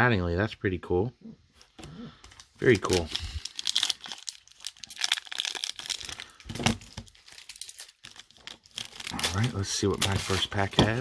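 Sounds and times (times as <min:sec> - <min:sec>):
plastic wrapper crinkling and tearing: 0:02.2 - 0:11.0.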